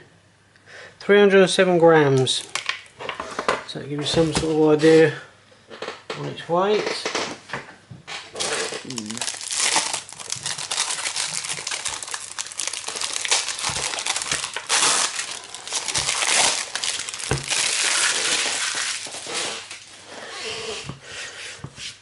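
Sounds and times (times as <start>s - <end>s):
packaging crinkling: 8.3s - 20.0s.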